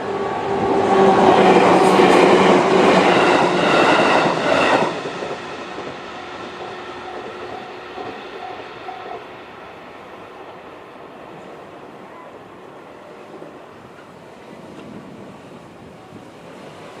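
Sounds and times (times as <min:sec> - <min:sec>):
electric train rumbling past: 0:00.0 - 0:17.0
crossing warning bell: 0:05.7 - 0:09.8.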